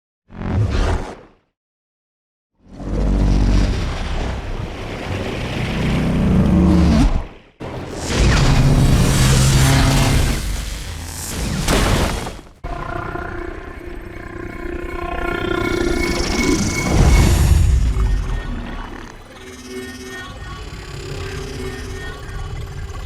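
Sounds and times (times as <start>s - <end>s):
steady electronic tones: 7.7s - 22.9s
loud noisy roar: 7.8s - 19.8s
deep rumbling roar: 7.9s - 12.5s.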